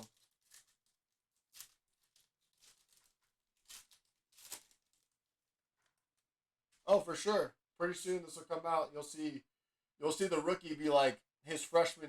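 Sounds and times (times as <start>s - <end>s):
trading cards rustling: 0.1s - 5.0s.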